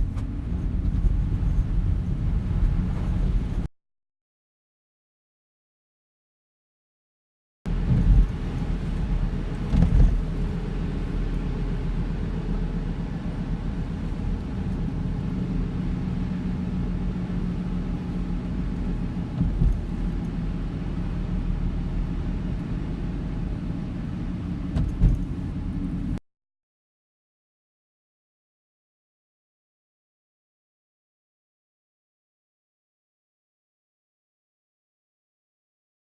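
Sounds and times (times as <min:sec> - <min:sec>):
car road and engine rumble: 0:00.0 - 0:03.7, 0:07.7 - 0:26.2.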